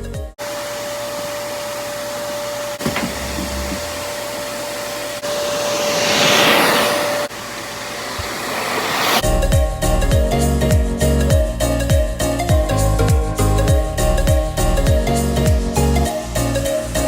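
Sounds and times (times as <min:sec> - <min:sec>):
vacuum cleaner running: 0:00.4 - 0:09.2.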